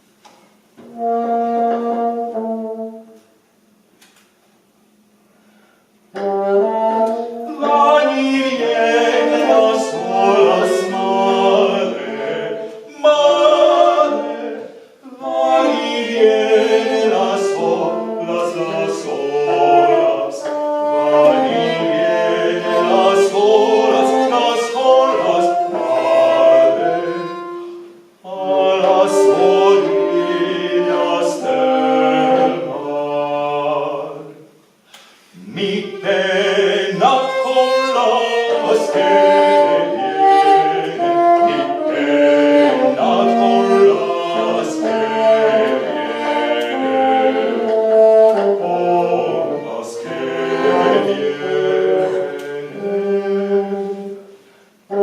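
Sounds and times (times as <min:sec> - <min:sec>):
early music instruments: 0:00.0 - 0:55.0
people singing: 0:07.1 - 0:34.5, 0:35.3 - 0:53.9.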